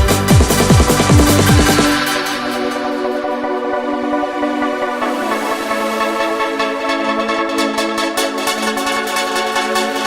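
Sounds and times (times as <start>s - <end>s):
kick drum beat: 0.0s - 1.9s
held synth chords: 0.0s - 7.6s.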